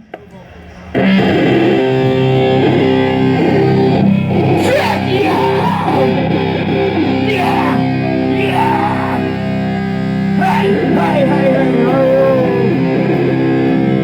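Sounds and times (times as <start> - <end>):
distorted electric guitar chords: 0.9 - 14.0
person speaking: 4.6 - 6.2, 7.2 - 9.4, 10.4 - 12.8.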